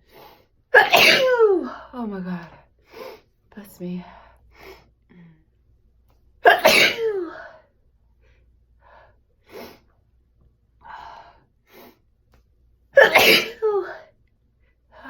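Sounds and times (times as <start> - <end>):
person sneezing: 0.8 - 1.5, 6.4 - 7.4, 13.0 - 14.0.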